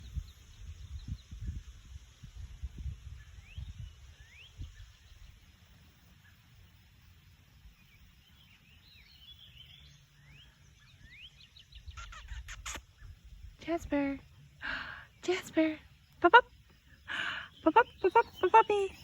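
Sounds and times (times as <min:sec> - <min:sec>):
low wind-like rumble: 0:00.0 - 0:05.8, 0:07.6 - 0:15.3
small birds chirping: 0:00.0 - 0:19.0.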